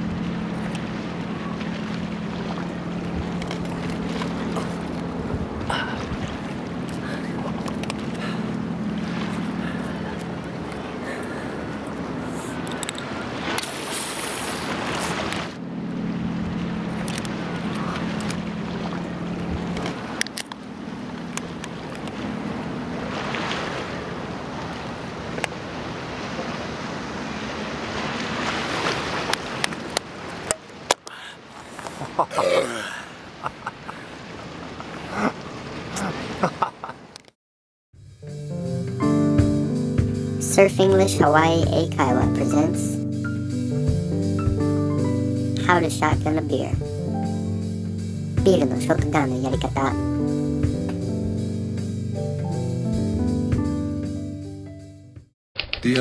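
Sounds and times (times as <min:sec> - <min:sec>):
steady low hum: 0:00.0 - 0:13.5
wind buffeting microphone: 0:00.0 - 0:13.6
ocean surf washing in: 0:00.0 - 0:37.2, 0:38.2 - 0:53.8.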